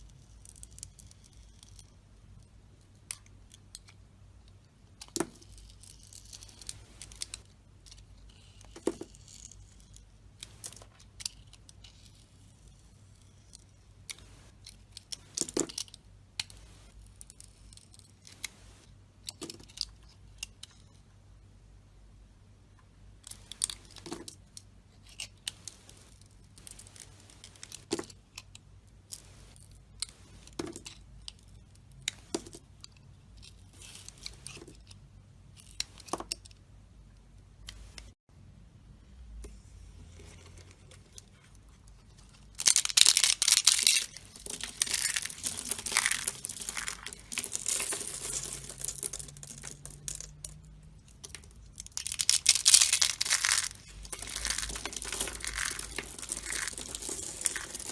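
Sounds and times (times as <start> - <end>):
soap crunching and crumbling: 42.0 - 57.9.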